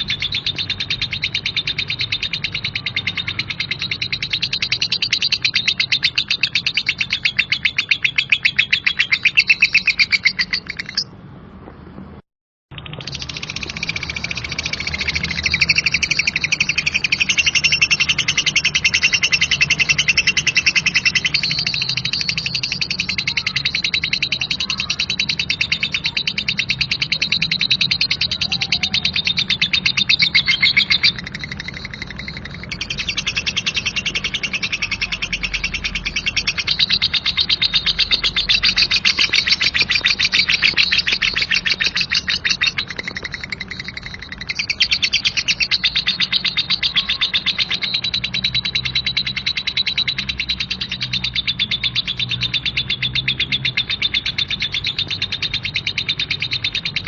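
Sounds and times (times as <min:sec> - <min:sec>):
lovebird harsh chirping chatter: 0:00.0 - 0:11.2, 0:12.7 - 0:57.0.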